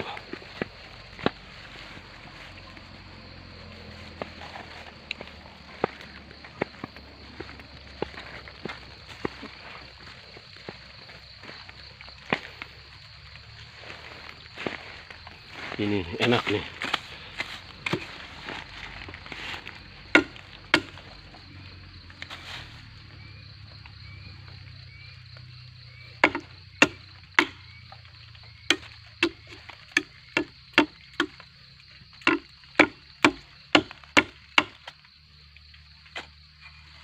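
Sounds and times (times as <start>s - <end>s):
blade chopping into bamboo: 17.8s - 18.2s, 20.1s - 21.0s, 26.2s - 27.6s, 32.2s - 35.0s.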